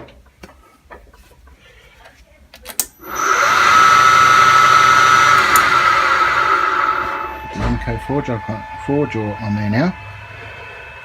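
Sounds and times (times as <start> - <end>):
clicks: 2.5 - 3.0, 5.3 - 5.8
lathe motor whining: 3.0 - 11.0.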